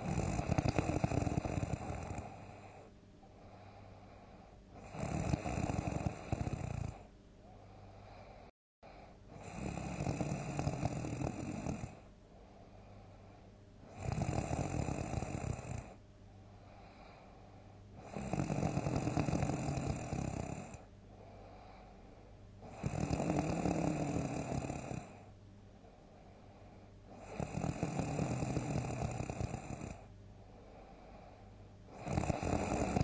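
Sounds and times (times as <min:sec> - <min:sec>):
person snoring loudly: 0:00.0 - 0:02.8, 0:04.8 - 0:07.1, 0:09.3 - 0:12.0, 0:13.9 - 0:16.0, 0:18.0 - 0:20.9, 0:22.6 - 0:25.2, 0:27.1 - 0:30.0, 0:31.9 - 0:33.0.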